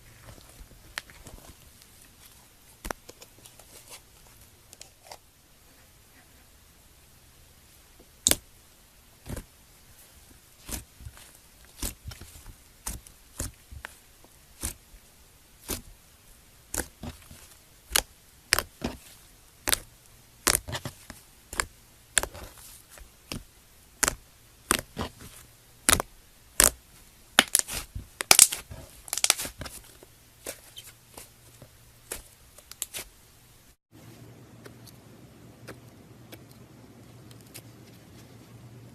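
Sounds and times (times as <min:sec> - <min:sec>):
crunchy slime crackling pops: 0:16.7 - 0:20.9, 0:23.2 - 0:26.8, 0:27.4 - 0:29.8.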